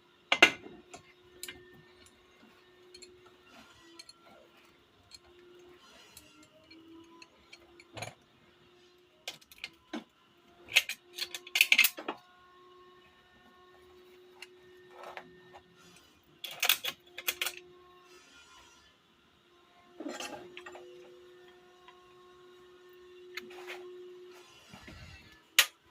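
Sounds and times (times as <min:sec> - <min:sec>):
metal parts clicking: 0:00.3 - 0:08.2, 0:09.2 - 0:10.0, 0:10.6 - 0:12.3, 0:14.3 - 0:17.7, 0:20.0 - 0:22.0, 0:24.9 - 0:25.8.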